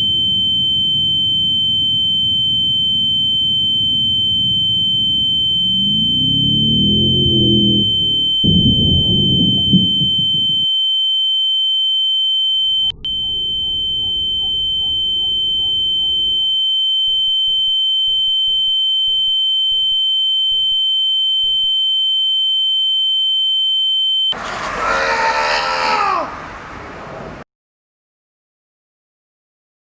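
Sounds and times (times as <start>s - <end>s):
fainter lower tone: 0.0s - 24.3s
high-pitched electronic tone: 3.6s - 10.6s, 12.9s - 16.4s
low rumble: 3.9s - 10.6s
short pulses: 5.3s - 10.6s
noisy burst with swooping glides: 5.6s - 10.3s.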